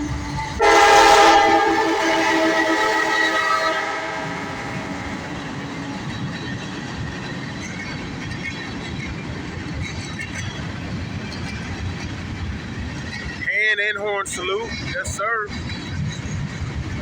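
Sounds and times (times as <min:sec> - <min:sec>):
freight train rumbling past: 0:00.0 - 0:17.0.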